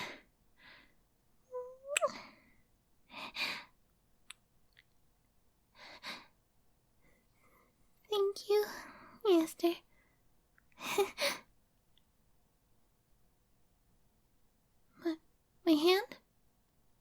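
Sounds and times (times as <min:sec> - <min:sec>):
woman humming: 0:01.5 - 0:02.2.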